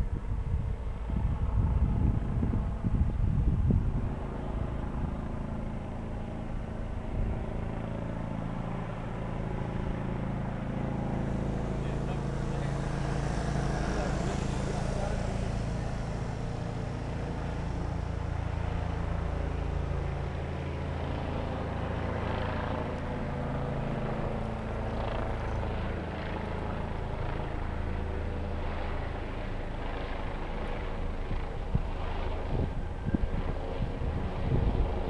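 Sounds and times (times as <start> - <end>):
wind thumps on microphone: 0.0 - 4.2, 31.4 - 35.0
helicopter flying overhead: 0.0 - 35.0.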